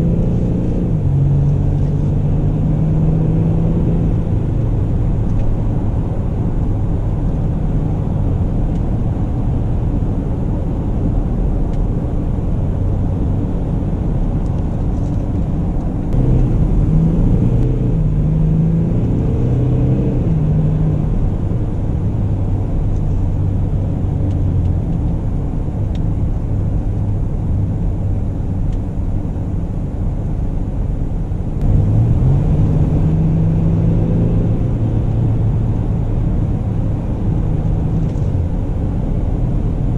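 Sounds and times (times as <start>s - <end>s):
car engine: 0.0s - 39.9s
road rumble: 0.0s - 39.9s.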